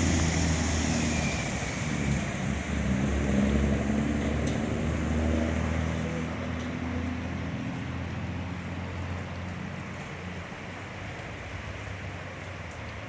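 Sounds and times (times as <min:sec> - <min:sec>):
floodwater flowing: 0:00.0 - 0:05.8
vehicle engines humming: 0:00.0 - 0:12.3.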